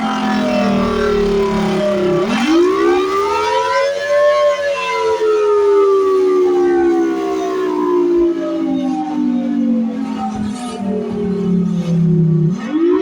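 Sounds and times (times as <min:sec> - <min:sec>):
warning siren wailing: 0:00.0 - 0:13.0.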